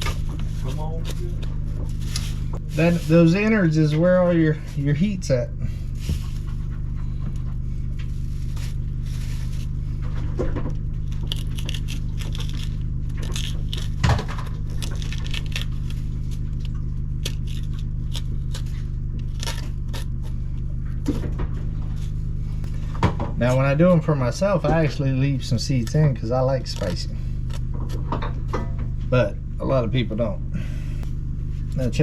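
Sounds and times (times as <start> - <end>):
low mechanical hum: 0.0 - 32.0
plastic spoon scraping peppers: 26.6 - 28.1.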